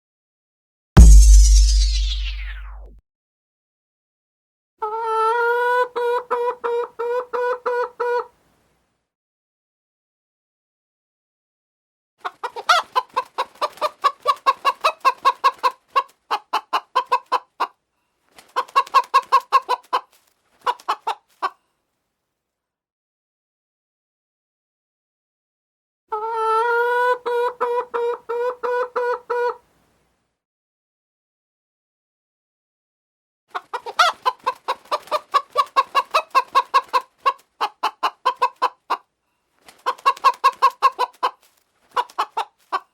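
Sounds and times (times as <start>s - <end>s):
hen clucking: 4.8s - 8.3s, 12.2s - 17.7s, 18.6s - 21.6s, 26.1s - 29.6s, 33.5s - 39.1s, 39.8s - 42.9s.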